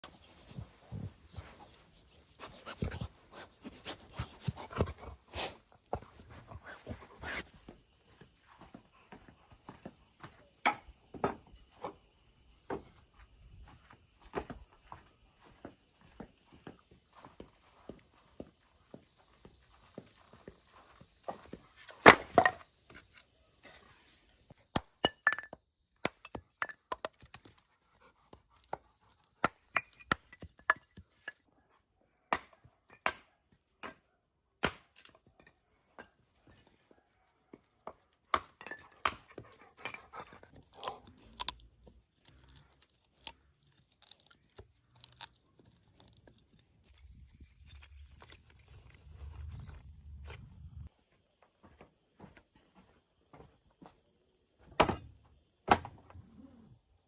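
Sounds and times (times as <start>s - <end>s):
faint low rumble: 47.2s - 50.9s.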